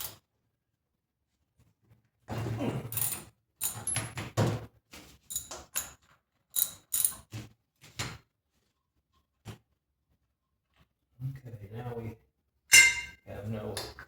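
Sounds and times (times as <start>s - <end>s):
metallic clicks and clinks: 2.9s - 4.0s, 5.3s - 6.0s, 6.6s - 7.2s
wrench ratcheting: 6.6s - 7.2s.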